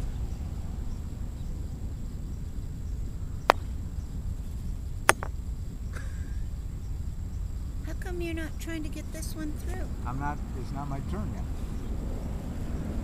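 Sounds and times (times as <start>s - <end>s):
croquet mallet clacking balls: 3.5s - 3.8s, 5.1s - 5.3s.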